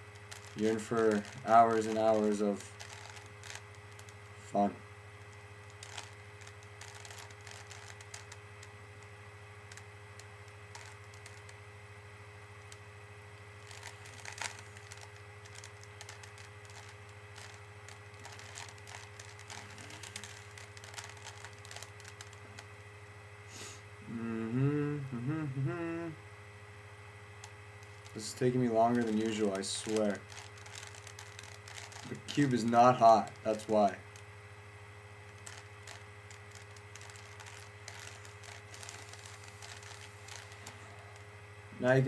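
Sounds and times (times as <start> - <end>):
electrical hum: 0.0 - 42.0
person's voice: 0.6 - 2.6, 4.4 - 4.8, 24.1 - 26.2, 28.2 - 30.2, 32.1 - 34.0, 41.8 - 42.0
puzzle cube twisting clicks: 27.8 - 33.7, 35.3 - 40.7.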